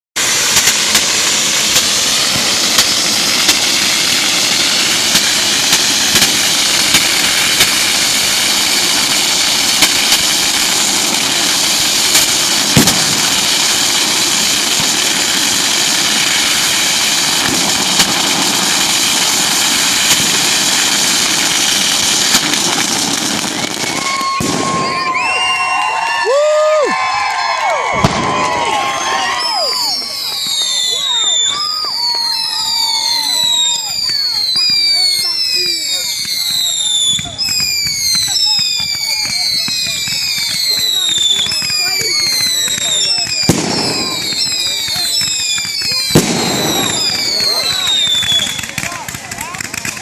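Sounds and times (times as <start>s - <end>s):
sharp pops: 0.2s - 11.3s
firework bang: 0.2s - 25.8s, 27.8s - 50.0s
firework fountain hissing: 0.2s - 50.0s.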